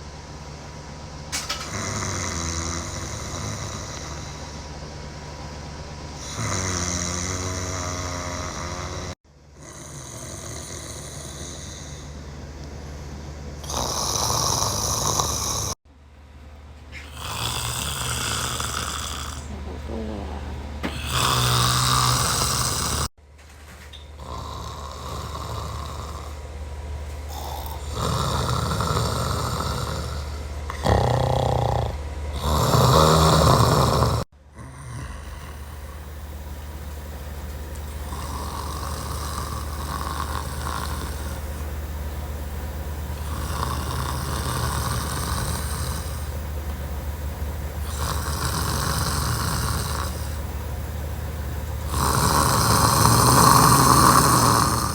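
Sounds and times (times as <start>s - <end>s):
steady low hum: 0.0s - 54.9s
man snoring: 1.3s - 4.9s, 6.2s - 12.2s, 13.6s - 15.8s, 16.9s - 23.2s, 24.2s - 26.5s, 27.3s - 36.7s, 37.8s - 46.7s, 47.7s - 50.8s, 51.6s - 54.9s.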